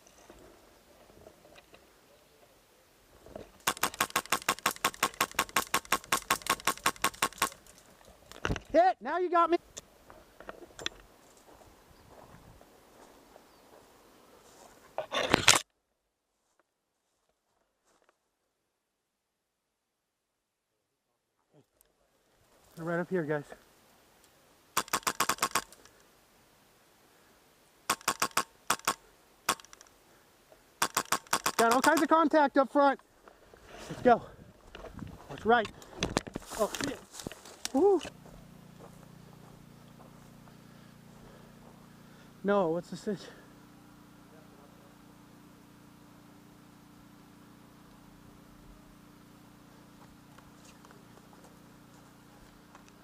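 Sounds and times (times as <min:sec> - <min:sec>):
airsoft gun firing: 0:03.6 - 0:07.6, 0:24.8 - 0:25.7, 0:27.9 - 0:29.8, 0:30.8 - 0:32.1.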